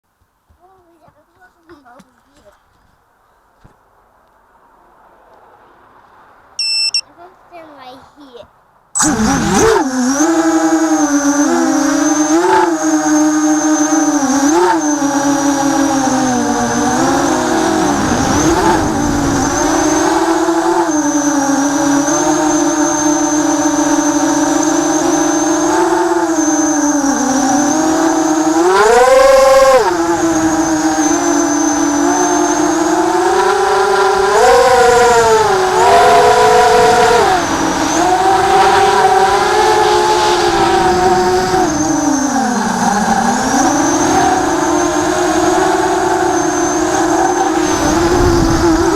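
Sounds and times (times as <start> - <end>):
high whine: 6.6 - 7.0, 34.8 - 48.9
quadcopter motors buzzing: 6.6 - 7.0, 9.0 - 48.9
wind rushing: 16.6 - 20.6, 47.6 - 48.9.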